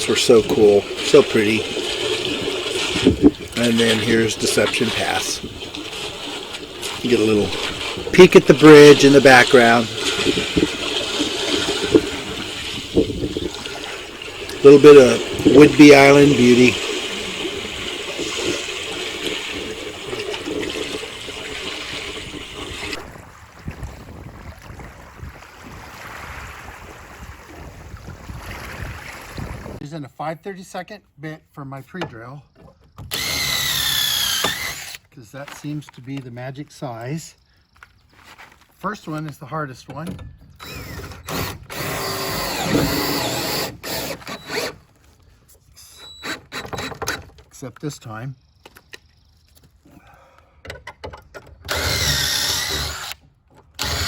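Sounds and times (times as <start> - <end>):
water rushing: 0.0 - 23.8
wind: 0.0 - 54.0
power drill running: 0.2 - 23.1, 33.1 - 35.0, 40.6 - 44.8, 51.7 - 53.2, 53.8 - 54.0.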